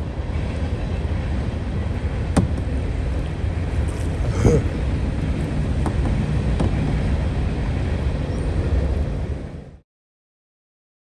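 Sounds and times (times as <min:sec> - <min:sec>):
rushing floodwater: 0:02.9 - 0:05.9.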